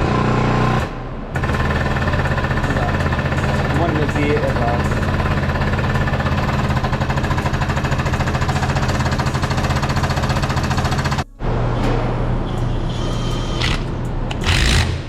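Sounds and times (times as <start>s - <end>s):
car engine idling: 0.3s - 11.7s.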